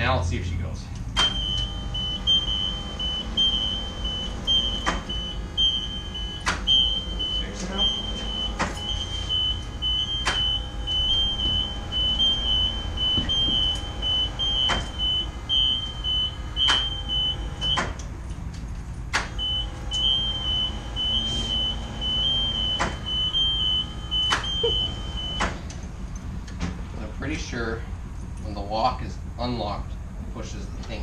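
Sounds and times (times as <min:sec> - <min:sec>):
low rumble: 0:00.0 - 0:31.0
bus warning buzzer: 0:01.2 - 0:18.0, 0:19.3 - 0:25.6.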